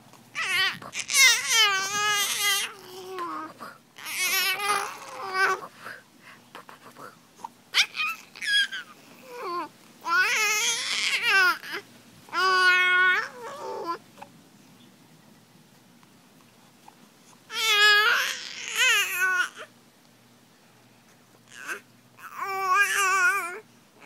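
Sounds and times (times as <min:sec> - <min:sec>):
high-pitched wailing and babbling voice: 0:00.4 - 0:05.7, 0:07.8 - 0:11.8, 0:12.4 - 0:14.0.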